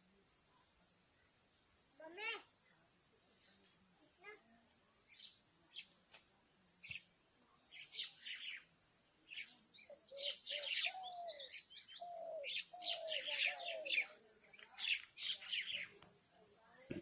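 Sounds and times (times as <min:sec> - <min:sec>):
sparrows chirping: 0:05.1 - 0:06.0, 0:06.8 - 0:16.8
dove cooing low falling notes: 0:10.1 - 0:14.1.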